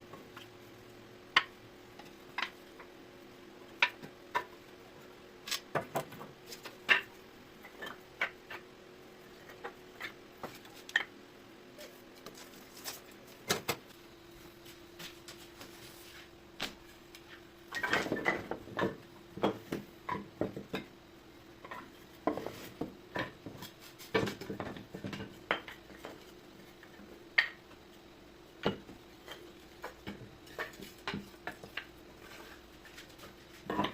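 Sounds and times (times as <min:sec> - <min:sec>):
faint steady hum: 0:00.0 - 0:33.9
boards and tools clattering: 0:05.5 - 0:08.6, 0:16.7 - 0:20.9, 0:21.6 - 0:27.6, 0:28.6 - 0:33.9.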